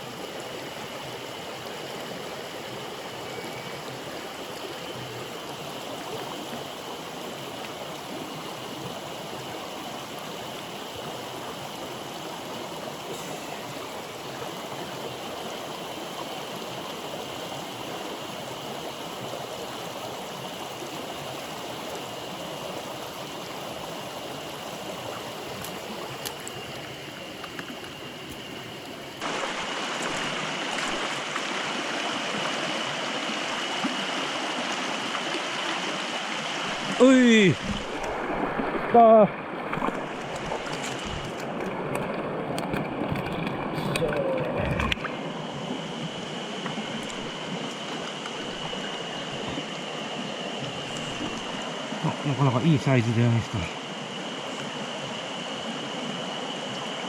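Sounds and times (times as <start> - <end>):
stream water rushing: 0.0 - 57.0.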